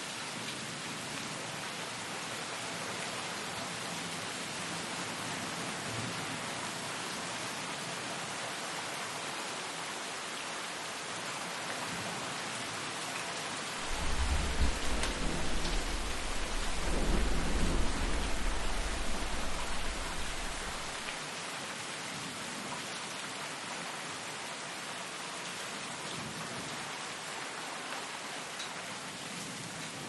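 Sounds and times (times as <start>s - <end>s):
steady rainfall: 0.0s - 30.0s
thunder rolling: 13.8s - 21.1s.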